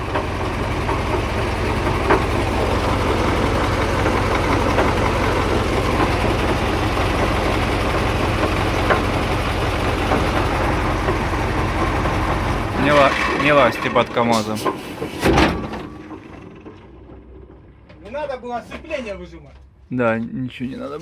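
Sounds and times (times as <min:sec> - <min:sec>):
diesel truck engine idling: 0:00.0 - 0:15.0.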